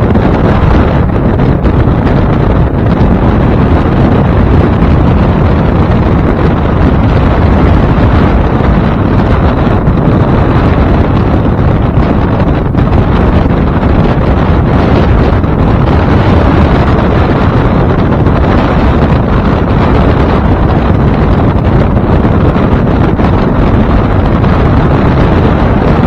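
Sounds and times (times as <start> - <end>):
outboard motor: 0.0 - 26.0
water beneath boat hull: 0.0 - 26.0
wind buffeting microphone: 0.0 - 26.0.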